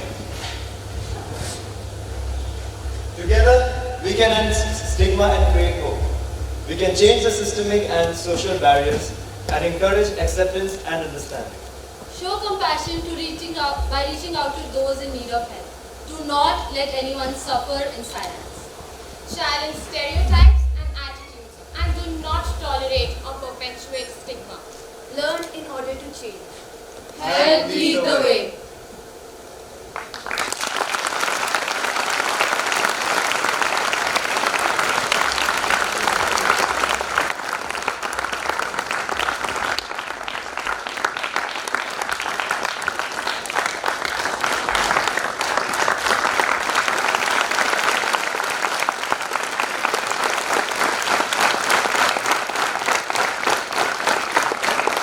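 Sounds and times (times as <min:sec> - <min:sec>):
audience applauding: 0:29.9 - 0:55.0.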